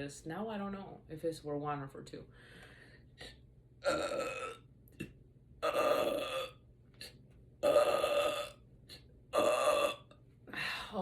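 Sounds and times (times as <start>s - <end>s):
woman belching: 3.8s - 4.6s, 5.6s - 6.6s, 7.6s - 8.6s, 9.4s - 10.1s.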